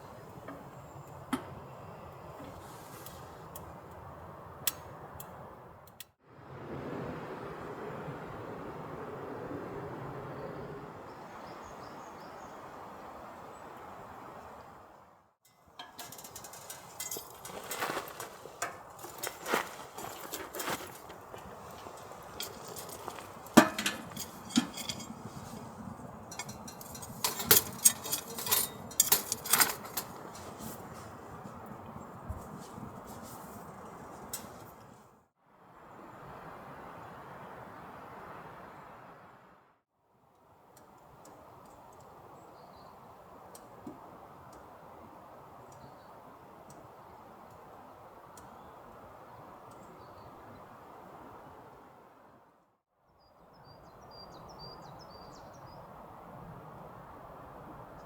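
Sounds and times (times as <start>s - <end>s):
firewood crackling: 15.7s - 35.0s
metal cookware clinking: 15.8s - 20.2s, 21.6s - 25.7s, 26.3s - 30.4s.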